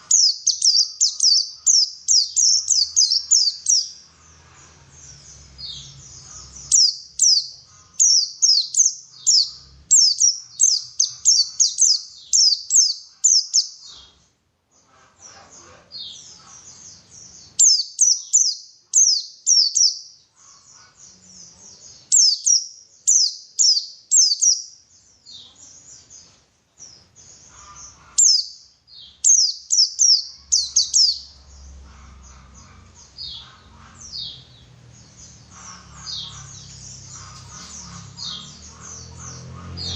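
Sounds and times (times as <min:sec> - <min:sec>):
bird singing whistled notes: 0:00.0 - 0:04.0, 0:06.6 - 0:13.8, 0:17.6 - 0:20.1, 0:22.1 - 0:24.8, 0:28.3 - 0:31.3.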